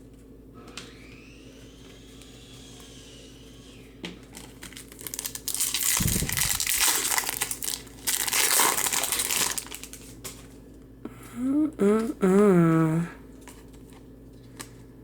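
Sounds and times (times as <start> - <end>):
foil wrapper crinkling: 4.3 - 10.6.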